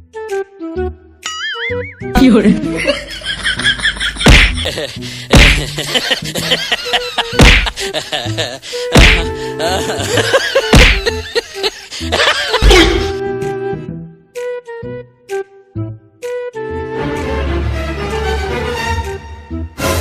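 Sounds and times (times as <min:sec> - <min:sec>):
music track: 0:00.0 - 0:20.0
loud slap-like hit: 0:04.2 - 0:04.7, 0:05.3 - 0:05.7, 0:07.4 - 0:07.8, 0:09.0 - 0:09.3, 0:10.7 - 0:11.0.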